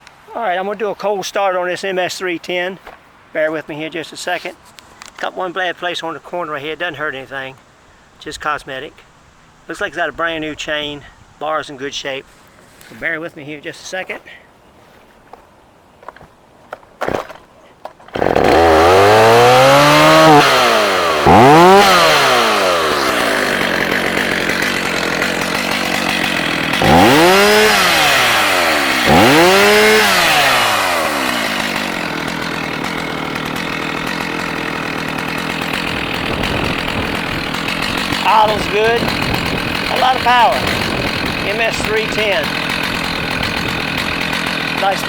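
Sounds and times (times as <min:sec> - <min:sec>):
chainsaw revving and idling: 0:18.1 - 0:45.0.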